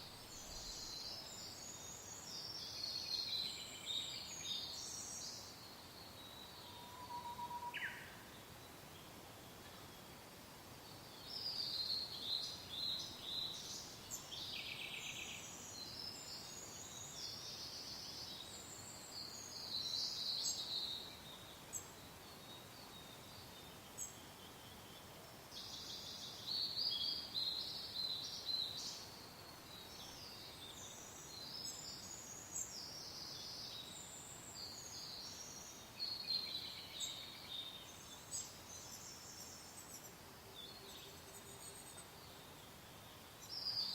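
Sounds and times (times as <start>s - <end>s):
soft wind hiss: 0.0s - 43.9s
songbirds chirping and trilling: 0.0s - 43.9s.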